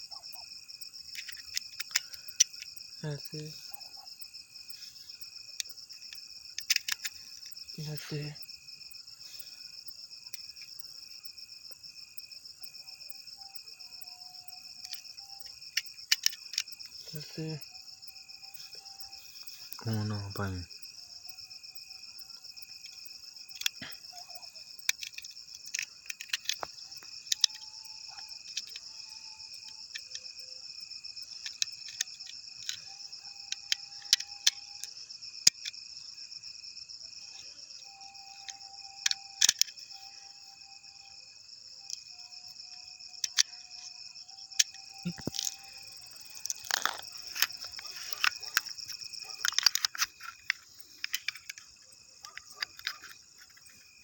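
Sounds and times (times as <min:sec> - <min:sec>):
insect chorus: 0:00.0 - 0:54.0
sharp clicks and knocks: 0:44.5 - 0:53.9.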